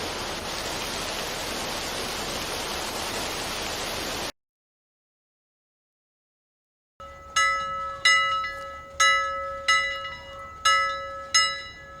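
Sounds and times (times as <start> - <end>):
bell-like chime strikes: 7.0 - 12.0
steady held tone: 7.0 - 12.0.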